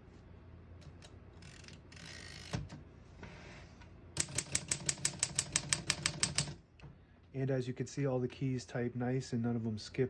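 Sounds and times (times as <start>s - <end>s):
rapid typewriter key strikes: 4.2s - 6.6s
typewriter knock: 4.2s - 6.6s.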